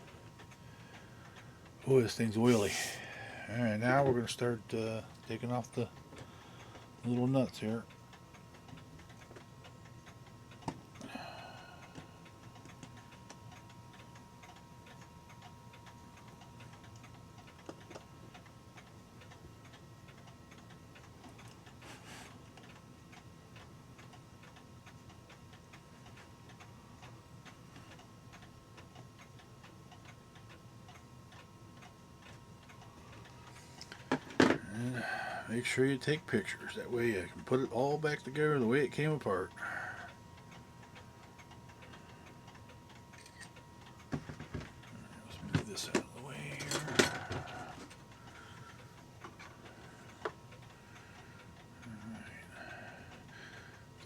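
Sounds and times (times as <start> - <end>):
mechanical clock ticking: 3.8 - 11.0, 11.8 - 54.0
clock parts clicking and rattling: 42.5 - 48.1.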